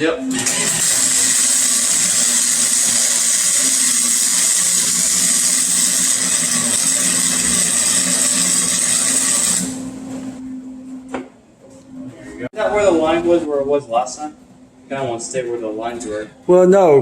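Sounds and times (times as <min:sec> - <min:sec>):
welding arc frying: 0:00.3 - 0:09.9.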